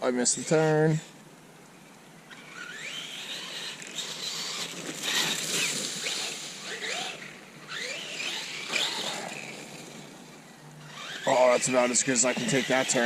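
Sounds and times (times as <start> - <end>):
steady noisy hiss: 0.0 - 13.0
rc truck motor whining: 2.2 - 13.0.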